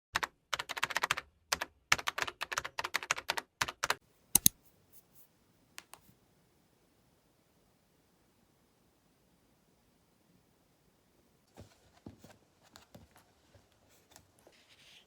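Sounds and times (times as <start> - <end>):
keyboard typing: 0.2 - 4.6.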